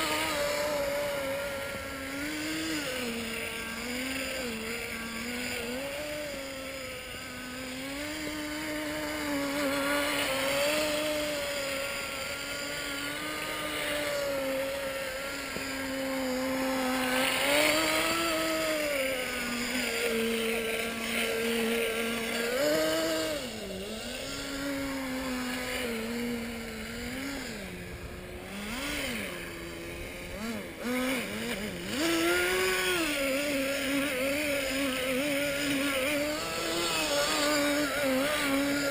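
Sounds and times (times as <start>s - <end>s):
small nitro engine buzzing: 0.0s - 38.9s.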